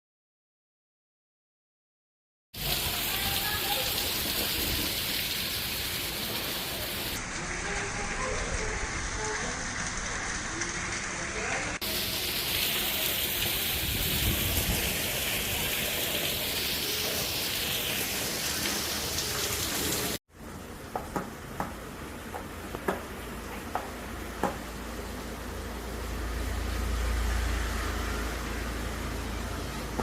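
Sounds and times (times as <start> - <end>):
heavy rain pouring: 2.6 - 30.0.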